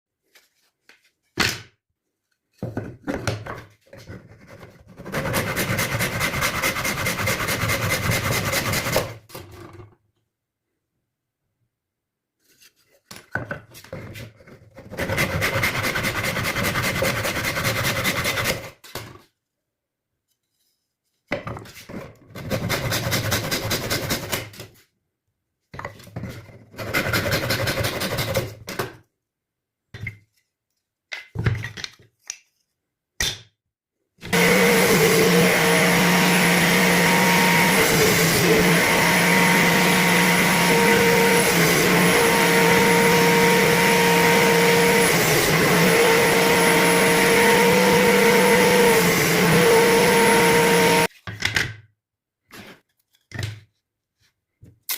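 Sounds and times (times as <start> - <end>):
power saw cutting wood: 5.1 - 9.1, 34.3 - 51.1.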